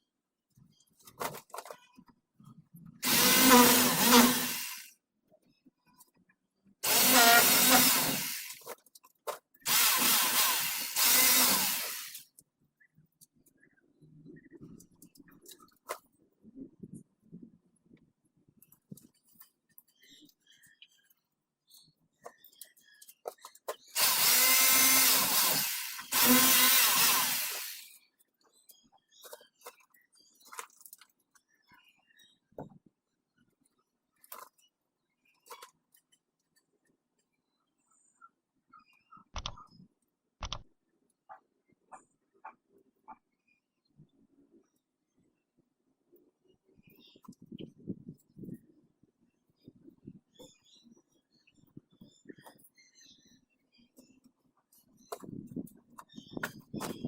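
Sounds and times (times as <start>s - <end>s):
power drill running: 3.0s - 4.9s, 6.8s - 8.6s, 9.7s - 12.2s, 24.0s - 28.0s.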